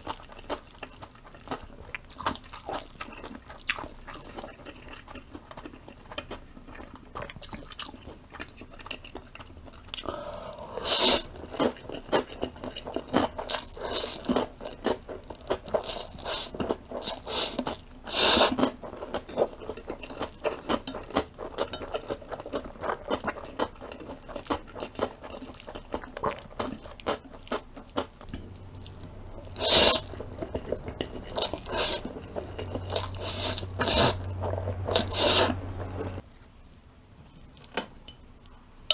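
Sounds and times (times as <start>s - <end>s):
wet chewing: 0.0s - 36.2s
faint low hum: 28.3s - 36.2s.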